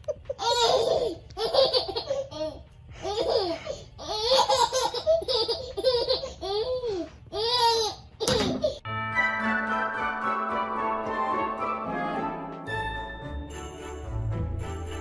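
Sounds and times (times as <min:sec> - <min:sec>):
baby laughing: 0:00.0 - 0:08.8.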